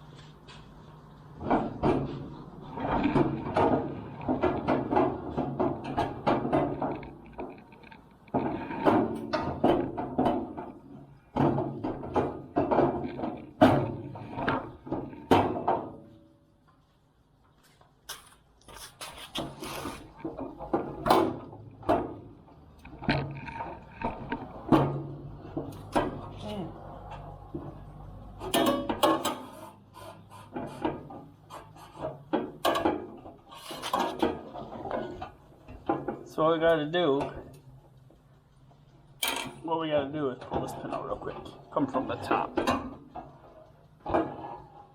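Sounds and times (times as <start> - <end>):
grill parts knocking and rattling: 1.4 - 16.3, 18.1 - 29.7, 30.5 - 37.6, 39.2 - 44.9
metal grill parts scraping: 18.1 - 22.2, 28.4 - 37.4, 39.2 - 44.9.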